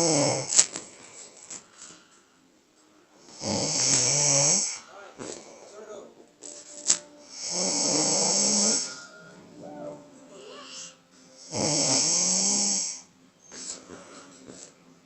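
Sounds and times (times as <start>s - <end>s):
person snoring: 0.0s - 0.6s, 3.2s - 4.9s, 7.2s - 14.6s
wheezy breathing: 0.0s - 2.4s, 3.1s - 5.8s, 6.5s - 14.8s.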